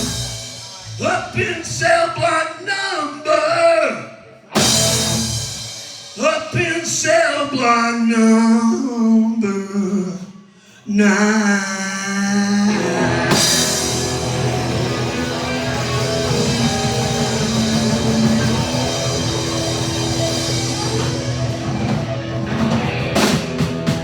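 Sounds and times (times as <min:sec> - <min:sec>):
drum and cymbal hits: 0:00.0 - 0:01.1, 0:04.6 - 0:06.6, 0:13.0 - 0:24.0
rock band playing: 0:00.0 - 0:01.8, 0:04.5 - 0:06.6, 0:12.6 - 0:24.0.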